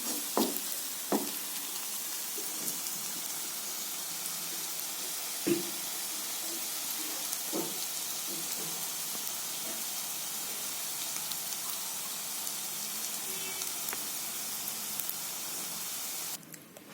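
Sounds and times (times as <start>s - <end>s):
food sizzling in hot oil: 0.0s - 16.4s.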